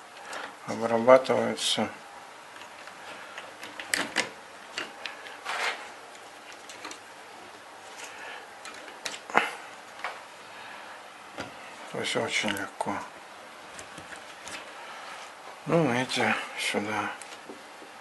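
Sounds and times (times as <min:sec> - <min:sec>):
wires clicking into connectors: 0:02.5 - 0:07.1, 0:07.9 - 0:10.2, 0:17.2 - 0:17.9.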